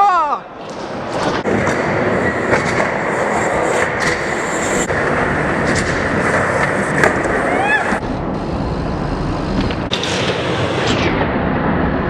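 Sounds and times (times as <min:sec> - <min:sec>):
wheels rolling on concrete: 0:00.6 - 0:08.0.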